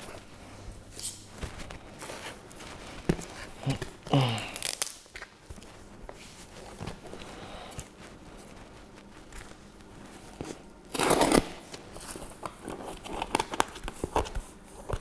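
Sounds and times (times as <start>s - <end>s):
packaging being torn open: 3.6s - 5.4s, 10.9s - 14.2s.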